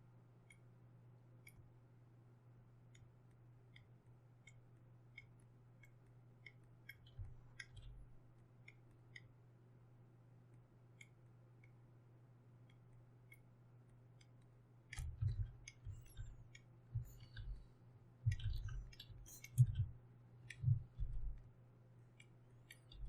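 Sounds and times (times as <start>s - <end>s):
faint low hum: 0.0s - 23.0s
computer mouse and keyboard clicking: 3.7s - 8.0s, 14.2s - 17.7s, 18.3s - 21.4s, 22.1s - 23.0s.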